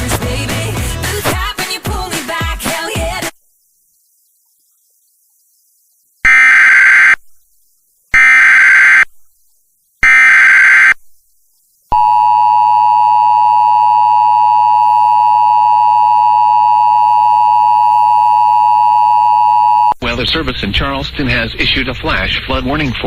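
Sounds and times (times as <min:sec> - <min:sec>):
harsh digital data bursts: 0:06.3 - 0:07.2, 0:08.2 - 0:09.0, 0:10.0 - 0:11.0.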